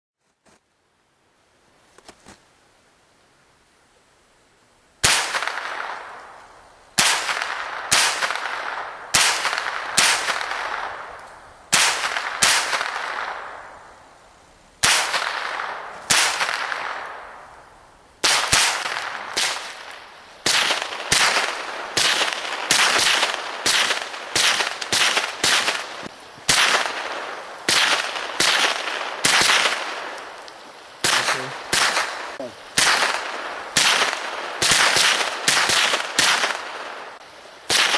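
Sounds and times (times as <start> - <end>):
rifle shots with echo: 5.0 - 6.3, 7.0 - 13.8, 14.8 - 17.5, 18.2 - 30.4, 31.0 - 37.9.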